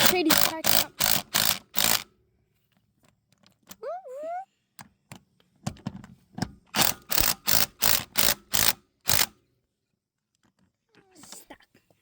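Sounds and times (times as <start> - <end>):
impact wrench bursts: 0.0 - 2.1, 6.8 - 9.3.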